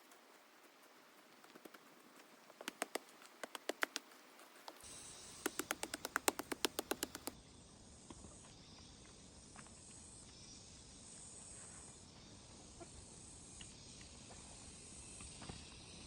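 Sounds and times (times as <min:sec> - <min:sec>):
sharp clicks: 0:01.4 - 0:07.4.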